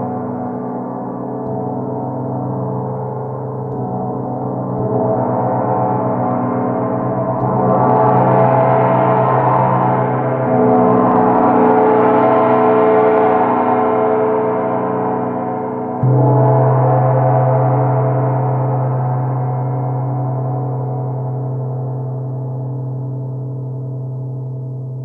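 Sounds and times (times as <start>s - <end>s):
gong ringing: 15.9s - 19.1s.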